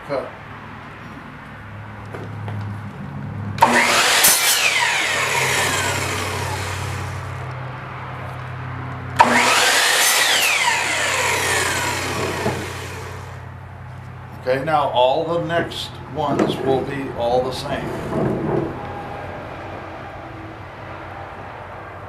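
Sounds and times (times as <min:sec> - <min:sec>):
steady low hum: 0:03.5 - 0:07.6
miter saw cutting wood: 0:03.6 - 0:07.5, 0:09.2 - 0:13.4.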